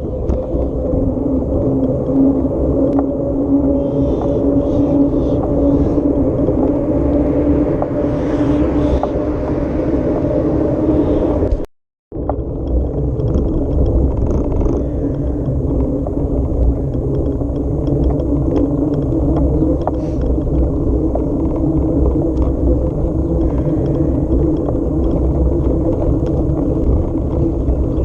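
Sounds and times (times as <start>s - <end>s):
small knocks and rattles: 12.2s - 22.6s.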